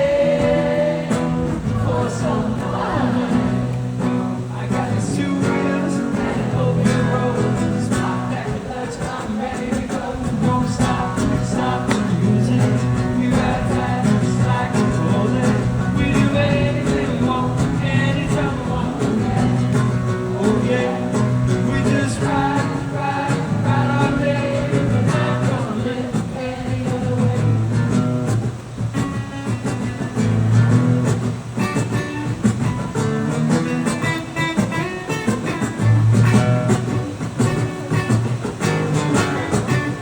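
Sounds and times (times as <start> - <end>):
bass guitar: 0.0 - 8.7, 10.2 - 25.7, 27.2 - 40.0
lead singer: 0.0 - 30.1
drums: 0.0 - 40.0
electric guitar: 0.0 - 40.0.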